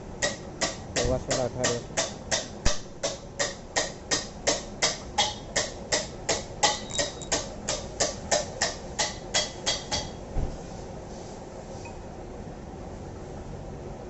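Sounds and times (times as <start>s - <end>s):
hammer striking metal: 0.2s - 10.1s.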